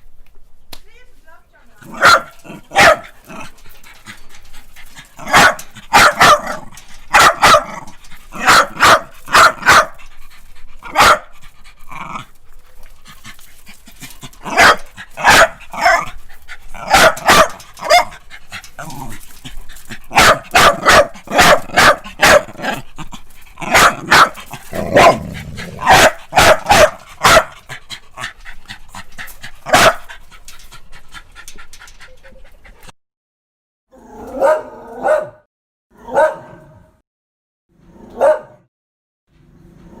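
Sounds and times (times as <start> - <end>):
dogs barking: 1.9 - 3.6, 5.1 - 10.1, 10.8 - 11.3, 14.2 - 19.1, 19.8 - 22.9, 23.6 - 27.8, 29.6 - 30.2, 34.3 - 35.4, 36.0 - 36.6, 38.2 - 38.6.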